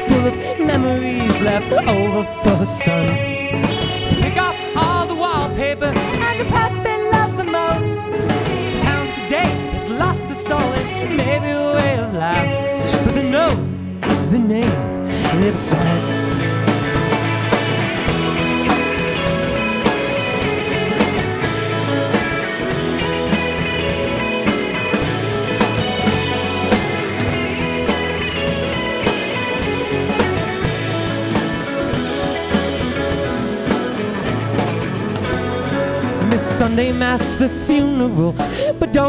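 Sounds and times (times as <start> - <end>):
folk-rock band playing: 0.0 - 39.0
drum strokes: 15.2 - 37.5.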